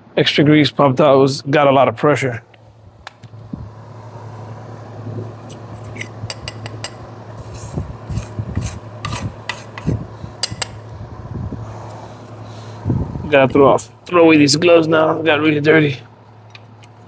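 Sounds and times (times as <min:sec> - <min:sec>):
steady low hum: 0:00.0 - 0:17.0
hands rubbing and scraping: 0:07.4 - 0:10.0.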